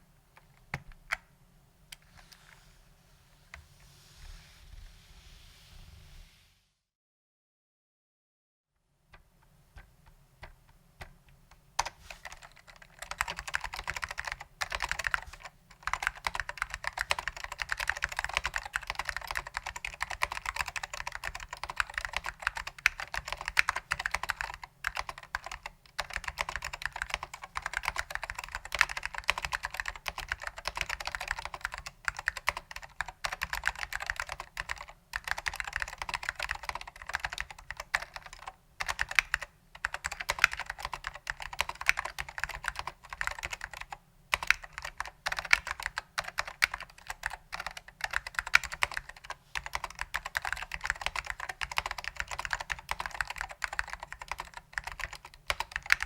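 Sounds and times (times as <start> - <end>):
fast keyboard typing: 11.8 - 56.0.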